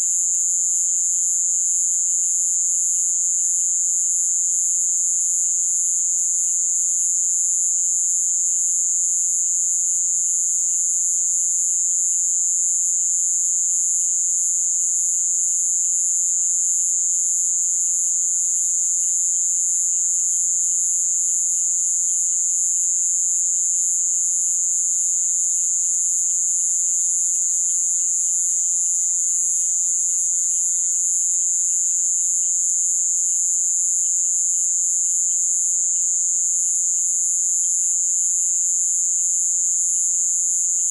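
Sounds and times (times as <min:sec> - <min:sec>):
insect chorus drone: 0:00.0 - 0:40.9
faint frog calls: 0:15.6 - 0:25.2.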